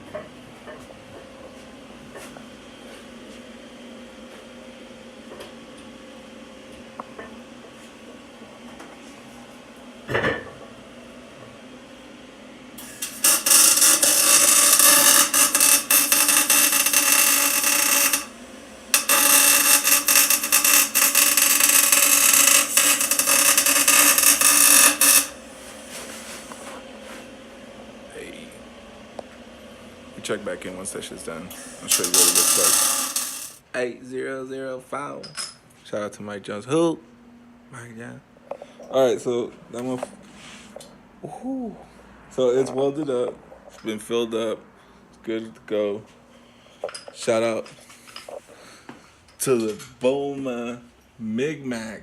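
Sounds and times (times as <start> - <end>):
welder arc crackling: 12.8 - 25.4, 31.6 - 33.6.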